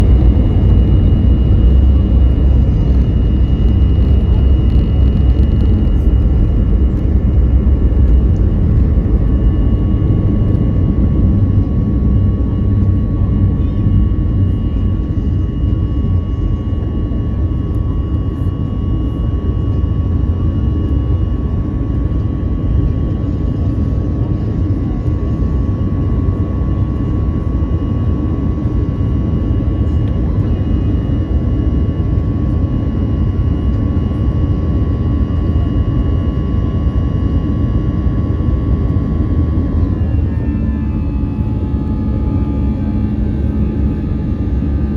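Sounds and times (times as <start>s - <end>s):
steady whining tones: 0.0s - 20.9s, 36.7s - 44.9s
airliner engine and airflow rumble: 0.0s - 44.9s.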